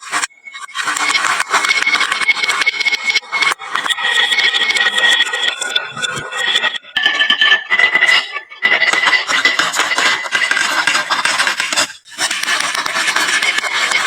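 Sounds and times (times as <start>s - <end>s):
marbles rolling down wooden run: 6.7s - 14.0s.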